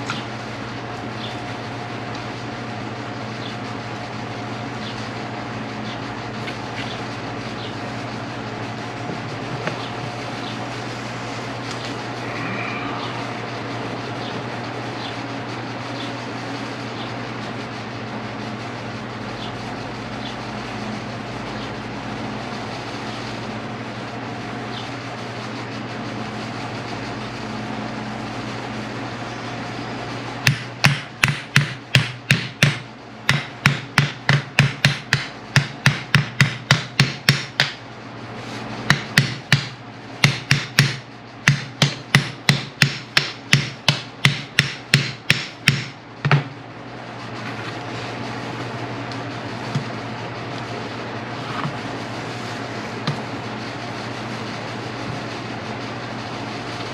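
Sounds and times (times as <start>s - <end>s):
hammer tapping on metal: 30.5s - 37.8s, 38.9s - 46.5s.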